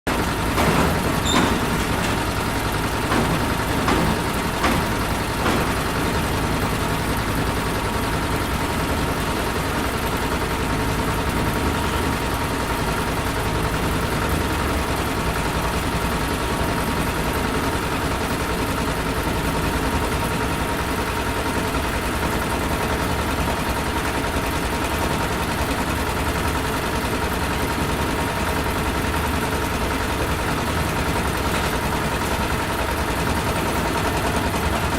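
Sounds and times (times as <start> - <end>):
heavy machine rumble: 0.1 - 19.4
sharp knocks: 0.4 - 7.1.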